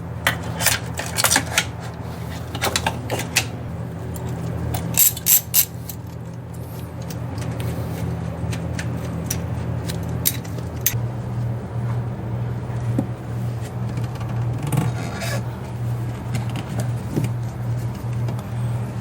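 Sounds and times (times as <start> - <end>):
hand tools clicking and scraping: 0.2 - 11.0.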